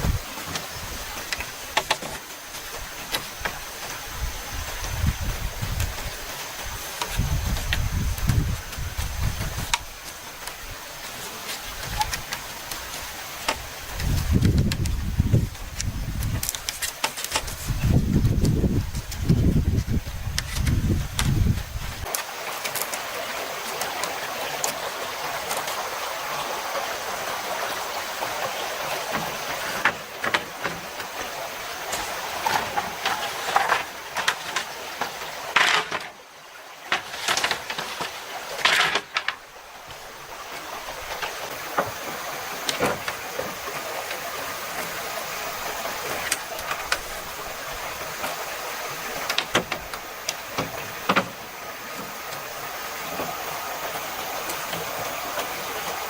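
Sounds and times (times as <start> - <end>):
stream flowing: 0.0 - 56.0
sharp knocks and clicks: 49.2 - 51.4.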